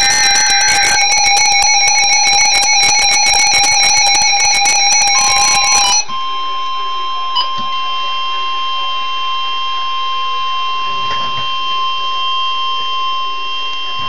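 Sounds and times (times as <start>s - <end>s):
screeching digital data burst: 0.0s - 6.1s
steady loud warning beep: 0.0s - 10.2s.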